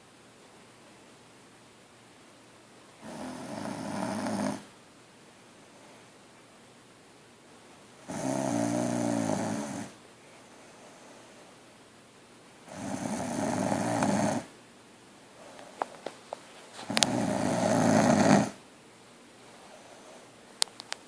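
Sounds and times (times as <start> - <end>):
woman snoring: 3.0 - 4.7, 8.0 - 10.0, 12.7 - 14.5, 16.9 - 18.6.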